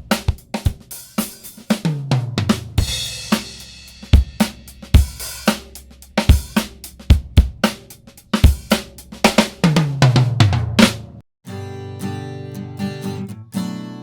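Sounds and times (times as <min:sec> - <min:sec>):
drum kit playing a beat: 0:00.0 - 0:11.2
descending tom fill: 0:02.2 - 0:11.2
acoustic guitar strumming chord: 0:11.4 - 0:14.0.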